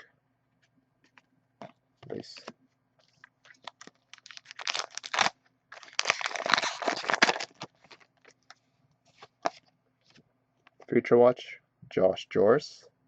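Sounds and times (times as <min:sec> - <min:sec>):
card pack wrapper crinkling: 0:03.0 - 0:09.6.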